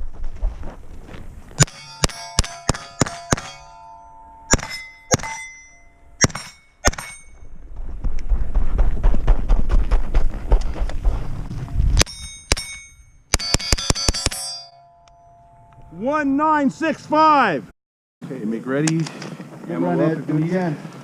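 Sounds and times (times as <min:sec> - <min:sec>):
rifle shots: 0:01.6 - 0:03.8, 0:06.2 - 0:07.2, 0:12.5 - 0:14.4
bullets clanging on steel targets: 0:01.6 - 0:07.5, 0:12.0 - 0:15.7.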